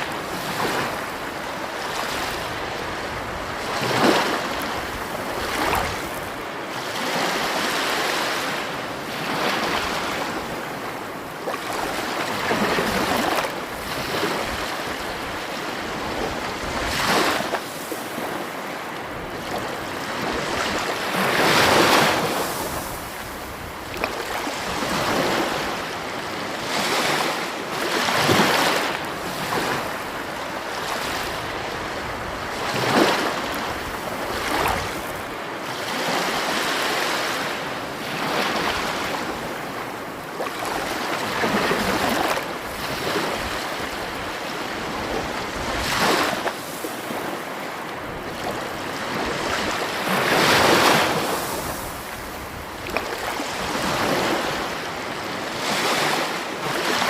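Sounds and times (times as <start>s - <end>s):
sea waves breaking: 0.0s - 57.0s.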